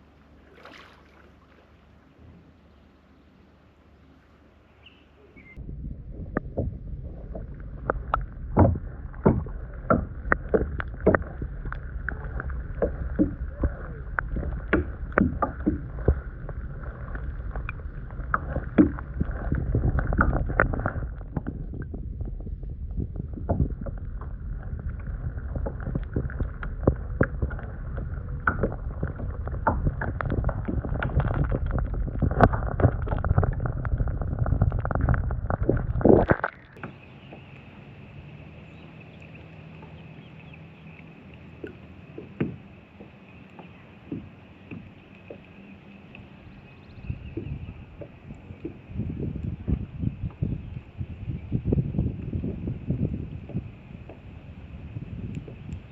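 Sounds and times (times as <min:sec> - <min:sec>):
water splashing: 0:00.0 - 0:04.6, 0:05.3 - 0:51.0
steady low rumble: 0:05.4 - 0:55.9
paddle knocking on hull: 0:06.2 - 0:37.4, 0:41.6 - 0:45.4.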